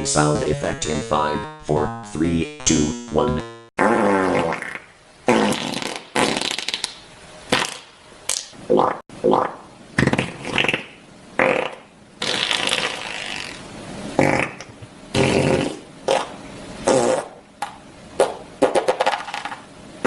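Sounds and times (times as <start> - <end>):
farting noises: 3.8 - 13.6, 14.2 - 17.4, 18.2 - 19.5.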